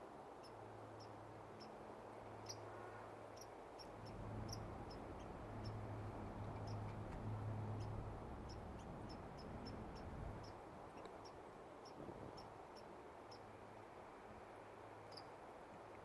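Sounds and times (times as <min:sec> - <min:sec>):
baby squirrel squeaking: 0:04.0 - 0:10.6.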